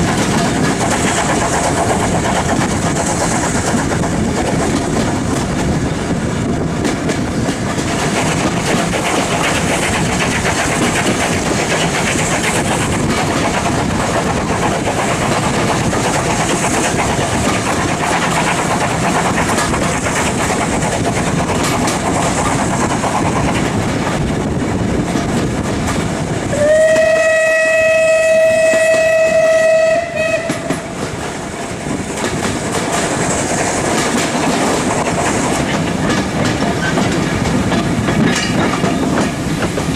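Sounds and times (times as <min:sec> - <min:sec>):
train wheels rattling on track: 0:00.0 - 0:39.9
steam whistle: 0:26.5 - 0:30.8.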